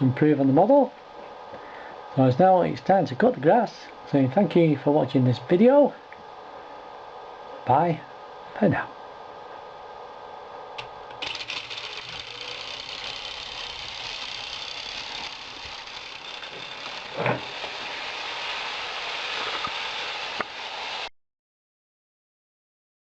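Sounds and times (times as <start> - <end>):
electric motor whirring: 11.2 - 20.8.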